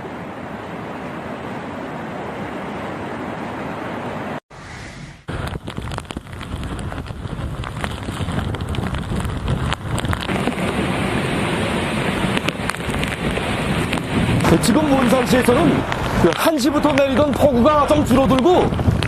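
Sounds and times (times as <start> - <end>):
wind buffeting microphone: 0.0 - 19.0
rain falling: 5.3 - 19.0.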